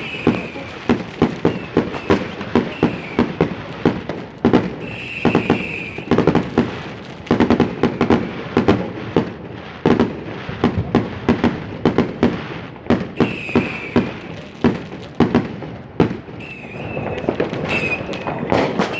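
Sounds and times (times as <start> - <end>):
firework whistling screech: 0.0 - 3.5, 4.7 - 6.8, 13.2 - 14.4, 16.3 - 18.9
firecracker and rocket bangs: 0.0 - 18.9.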